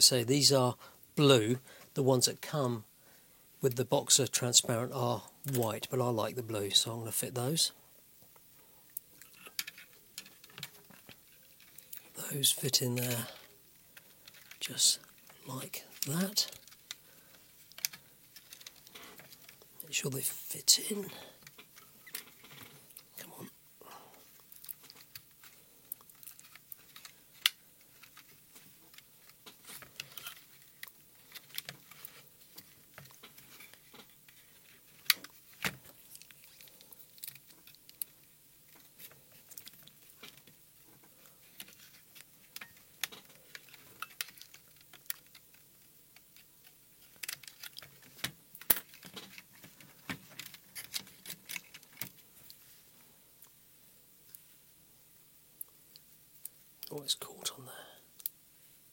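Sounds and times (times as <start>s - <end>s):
small plastic parts clicking: 8.9s - 12.1s, 13.0s - 15.3s, 15.9s - 19.7s, 24.4s - 52.2s.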